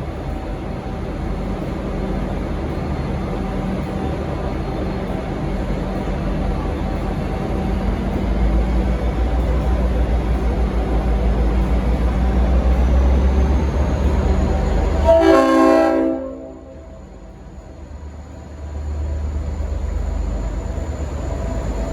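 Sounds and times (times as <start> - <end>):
diesel locomotive engine rumble: 0.0 - 21.9
train air horn blast: 15.0 - 17.1.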